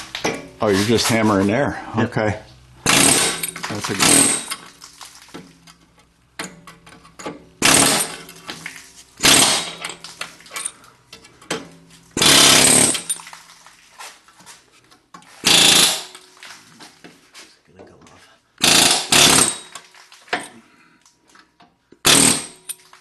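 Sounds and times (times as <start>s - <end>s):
pneumatic air hammer bursts: 2.8s - 4.6s, 7.6s - 8.4s, 9.2s - 10.0s, 12.2s - 13.2s, 15.4s - 16.2s, 18.6s - 19.8s, 22.0s - 22.8s.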